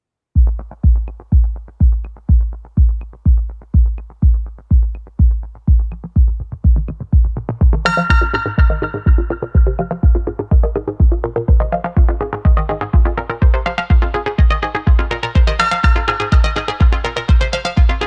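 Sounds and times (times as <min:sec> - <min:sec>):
kick drum beat: 0:00.4 - 0:18.0
synthesizer notes: 0:05.6 - 0:18.0.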